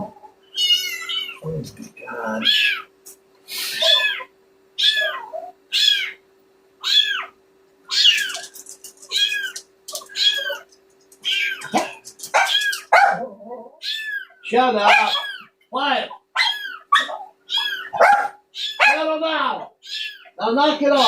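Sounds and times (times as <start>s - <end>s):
kitten meowing: 0.5s - 1.5s, 2.3s - 2.9s, 3.8s - 6.2s, 6.8s - 7.3s, 7.9s - 12.9s, 13.8s - 15.5s, 16.4s - 19.0s, 19.8s - 20.3s.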